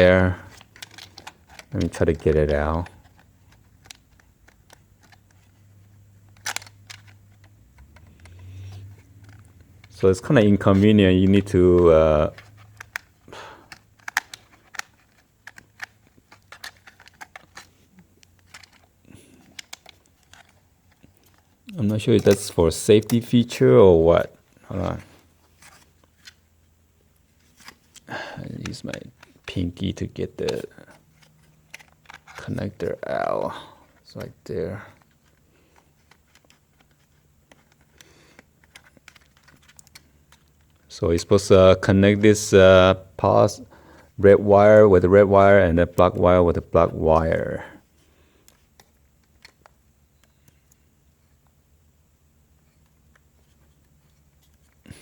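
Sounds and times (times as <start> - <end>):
small plastic clicks and rustles: 0.0 - 23.4, 27.1 - 42.4, 47.2 - 51.6, 52.6 - 55.0
fingers clicking and tapping plastic: 10.7 - 18.8, 19.4 - 21.4.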